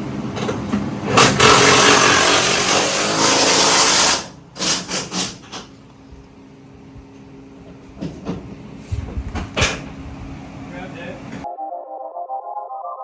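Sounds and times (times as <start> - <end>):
impact wrench running: 1.2 - 5.4.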